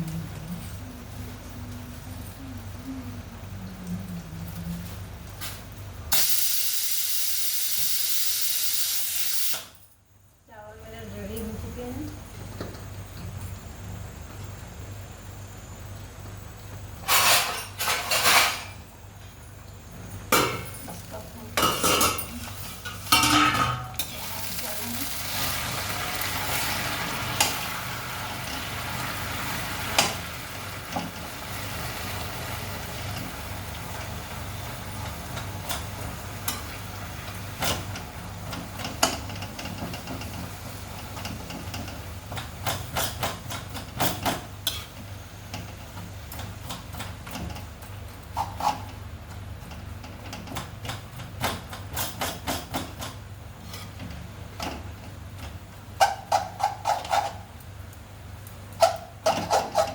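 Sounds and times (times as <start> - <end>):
oil sizzling in a pan: 4.8 - 9.7, 20.3 - 55.0.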